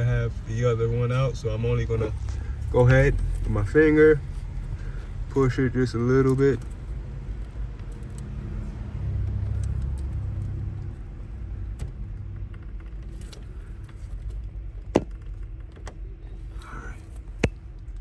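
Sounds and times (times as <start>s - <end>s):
handling noise with metallic clicks: 6.1s - 18.0s.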